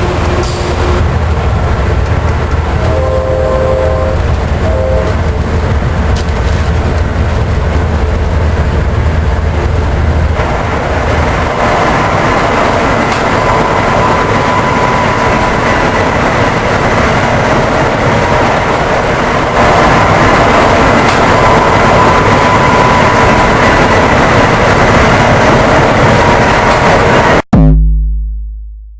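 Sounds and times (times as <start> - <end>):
train wheels rushing on rail: 0.0 - 27.4
deep hum: 27.5 - 28.9.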